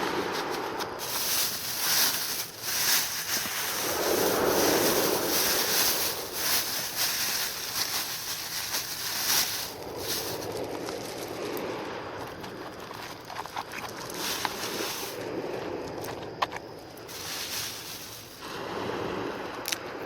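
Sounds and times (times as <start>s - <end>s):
sea waves washing in: 0.0s - 8.2s, 17.1s - 19.9s
wind buffeting microphone: 0.0s - 20.0s.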